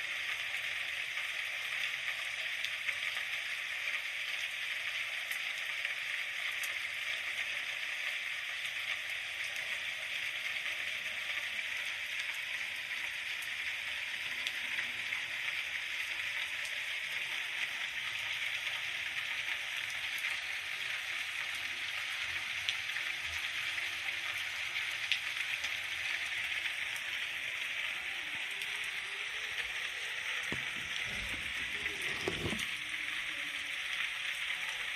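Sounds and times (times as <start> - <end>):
steady rain: 0.0 - 34.9.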